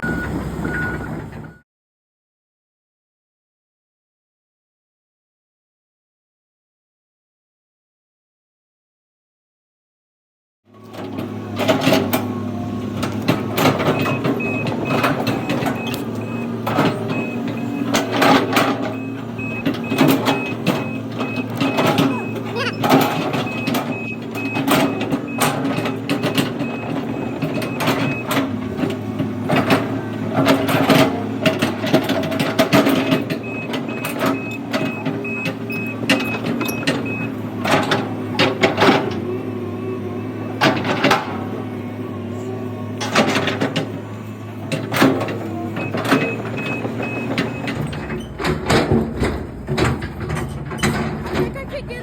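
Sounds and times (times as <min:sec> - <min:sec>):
backup alarm beeping: 0:00.0 - 0:01.6, 0:13.8 - 0:28.4, 0:33.0 - 0:37.4, 0:45.8 - 0:48.3
heavy machine engine running: 0:00.0 - 0:01.6, 0:10.7 - 0:52.0
clanks and knocks: 0:13.0 - 0:39.2, 0:44.7 - 0:52.0.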